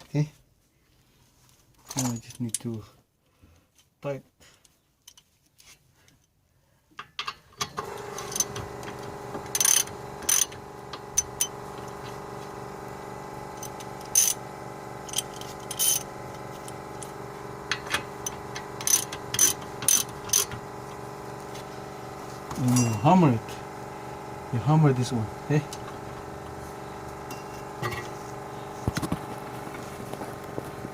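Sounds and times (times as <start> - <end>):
metal tool clicks and knocks: 7.0 - 7.8
steady hum: 7.8 - 30.9.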